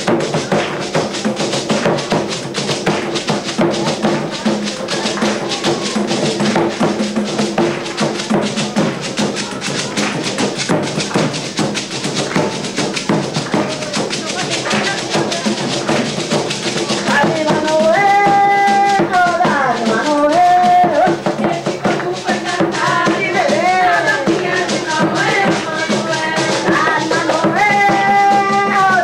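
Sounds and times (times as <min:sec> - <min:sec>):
drums: 0:00.0 - 0:29.0
shaken rattle beat: 0:00.0 - 0:29.0
person singing: 0:13.4 - 0:29.0.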